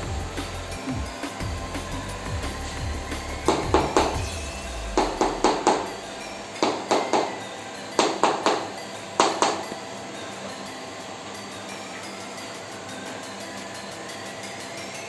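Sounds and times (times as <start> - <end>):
percussive massage strikes: 2.3 - 7.3.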